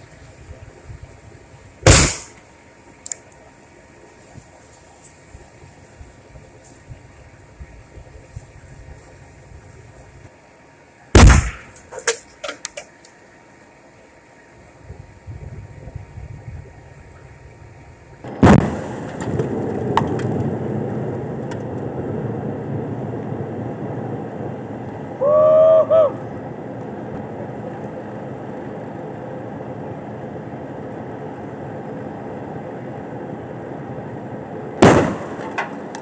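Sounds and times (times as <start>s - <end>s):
explosion blasts: 1.8s - 2.3s, 11.2s - 11.8s, 18.2s - 24.6s, 34.8s - 35.9s.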